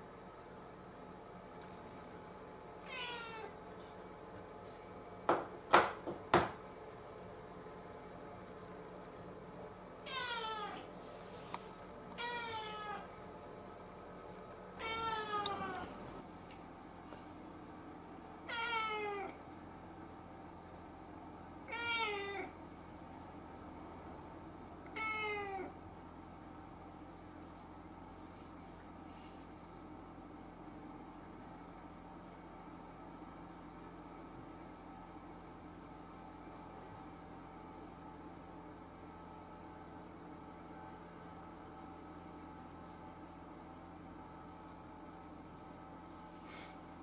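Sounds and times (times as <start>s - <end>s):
cat meowing: 2.8s - 3.6s, 10.0s - 10.9s, 12.2s - 13.1s, 14.8s - 15.9s, 18.4s - 19.4s, 21.6s - 22.5s, 24.9s - 25.8s.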